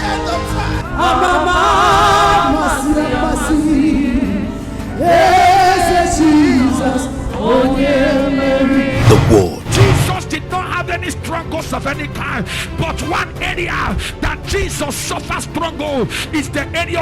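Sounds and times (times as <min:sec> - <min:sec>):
gospel singing: 0:00.0 - 0:10.4
backing music: 0:00.1 - 0:11.2.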